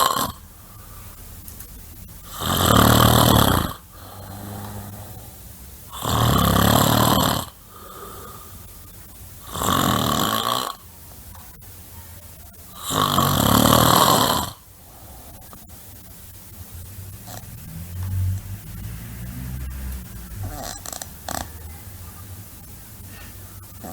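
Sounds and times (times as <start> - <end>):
person snoring loudly: 0.0 - 0.5, 2.2 - 8.5, 9.4 - 10.8, 12.7 - 15.5, 17.2 - 21.6
faint breathing: 0.0 - 1.3, 3.8 - 6.1, 7.5 - 9.6, 14.7 - 16.5, 22.9 - 23.9.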